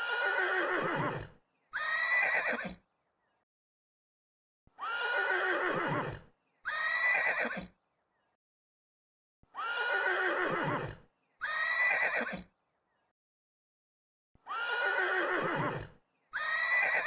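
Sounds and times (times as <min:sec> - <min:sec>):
horse whinnying: 0:00.0 - 0:02.8, 0:04.8 - 0:07.7, 0:09.6 - 0:12.5, 0:14.5 - 0:17.0.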